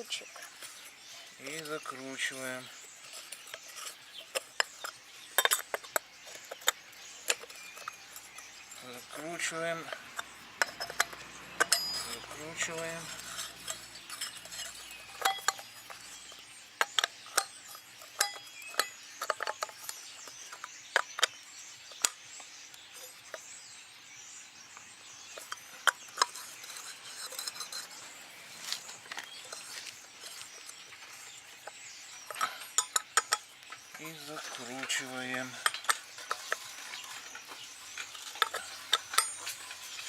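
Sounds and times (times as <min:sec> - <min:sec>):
metal wrench clinking on bolts: 0:01.5 - 0:21.3, 0:28.9 - 0:40.0.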